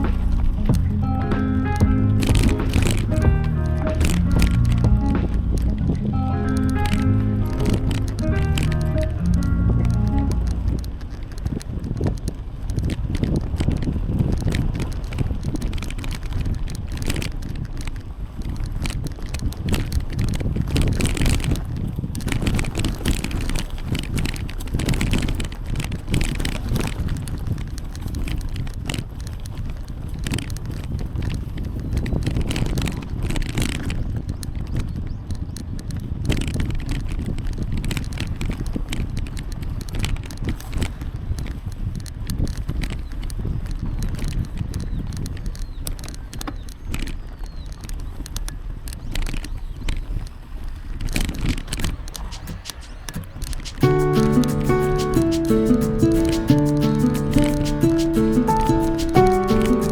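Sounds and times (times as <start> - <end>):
wind buffeting microphone: 0.0 - 53.9
bicycle tyres rolling on pavement: 1.6 - 55.7
bicycle clicks and rattles: 2.2 - 4.8, 10.5 - 53.9.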